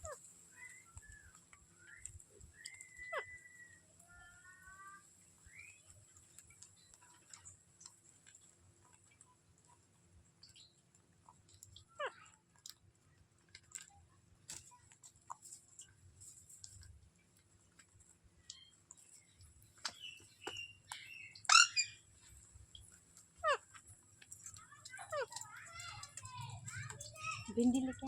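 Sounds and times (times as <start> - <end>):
parakeet squawking: 21.4 - 22.0
faint clicks: 22.3 - 28.0.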